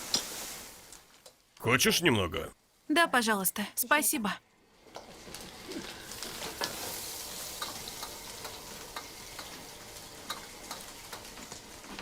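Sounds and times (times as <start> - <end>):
food sizzling in a frying pan: 0.0 - 1.6, 4.6 - 12.0
utensil clicking against pan: 10.2 - 11.3.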